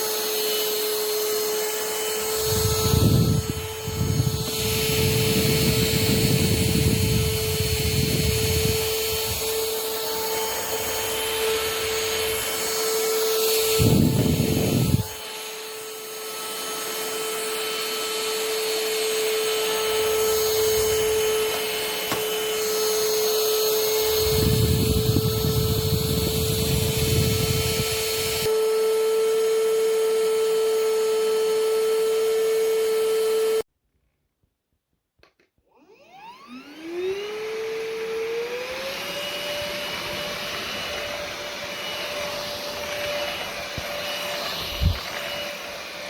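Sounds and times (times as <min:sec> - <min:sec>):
stick vacuum whine: 0:00.0 - 0:33.7, 0:35.2 - 0:46.0.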